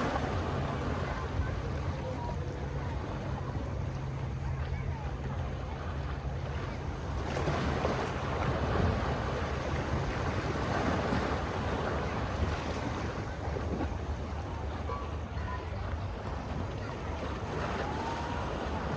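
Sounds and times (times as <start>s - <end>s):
ocean waves washing in: 0.0s - 4.0s, 5.0s - 18.9s
wind on microphone: 0.0s - 14.0s
low steady hum: 0.0s - 18.9s.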